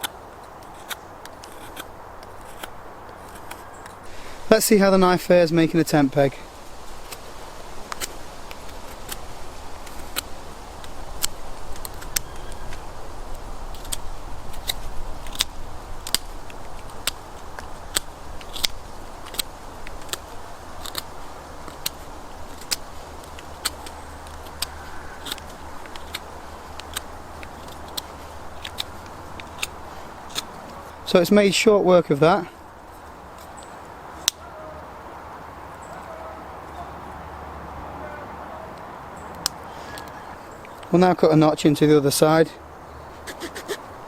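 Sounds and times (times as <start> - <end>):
knife whittling wood: 0.0 - 3.9.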